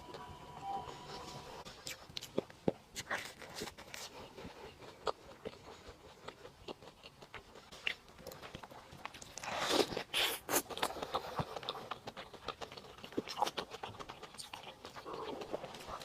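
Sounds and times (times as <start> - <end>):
person chewing food: 0.0 - 16.0.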